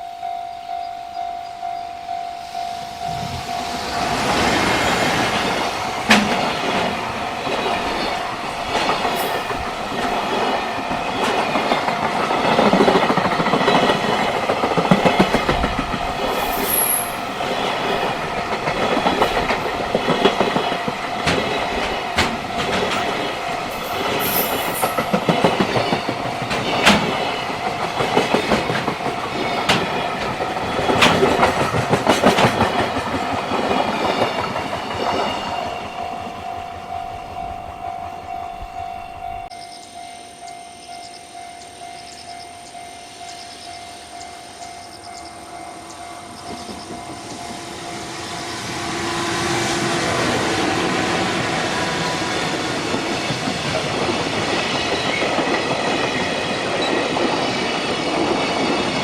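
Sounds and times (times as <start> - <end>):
continuous high ringing tone: 0.0 - 4.1, 34.7 - 49.0
train wheels clacking over rail joints: 3.4 - 35.9.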